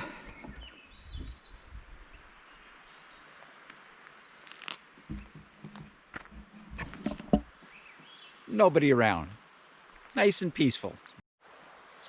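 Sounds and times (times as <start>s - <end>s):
soft knocks and thumps: 5.0s - 7.6s
bird chirps: 7.6s - 8.6s.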